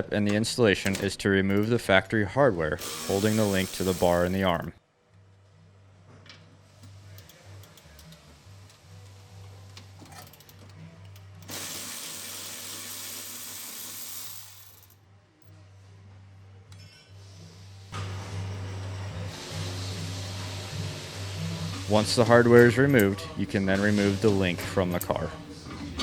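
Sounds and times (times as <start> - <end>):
background music: 0.0 - 16.8, 17.6 - 26.0
metal tools clinking: 0.3 - 2.1, 10.0 - 11.2
hissing tool: 2.8 - 4.5.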